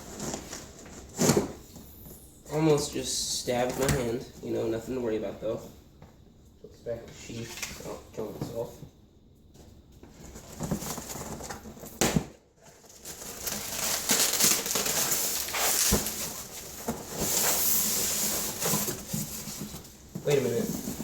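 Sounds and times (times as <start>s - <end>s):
wrapping rustling and crinkling: 12.6s - 21.0s.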